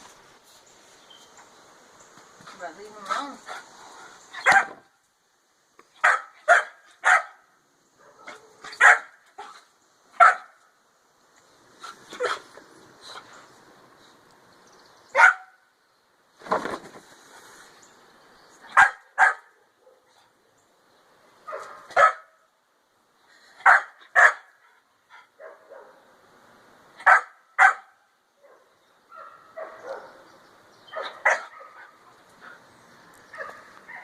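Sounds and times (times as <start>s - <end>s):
dog barking: 4.4s - 4.8s, 6.0s - 7.4s, 8.0s - 9.2s, 10.2s - 10.6s, 15.2s - 15.6s, 18.7s - 20.1s, 21.5s - 22.4s, 23.6s - 24.5s, 25.4s - 26.0s, 27.0s - 30.2s, 30.9s - 32.0s, 33.4s - 34.0s.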